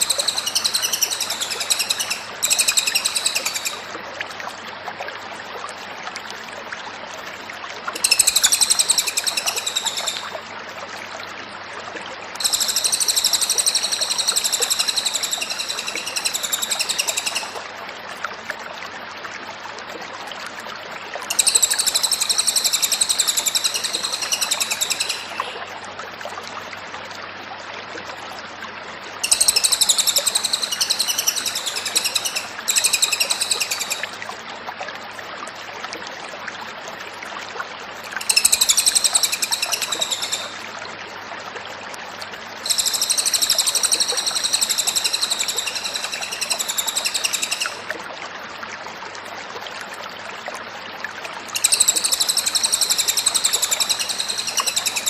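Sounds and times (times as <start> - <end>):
songbird rapid chirping song: 0.0 - 3.9, 21.3 - 25.6, 29.2 - 34.2, 51.6 - 55.0.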